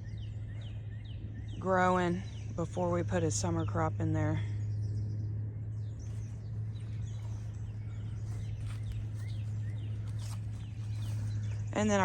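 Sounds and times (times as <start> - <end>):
steady low hum: 0.0 - 12.0
soft footsteps: 6.0 - 12.0.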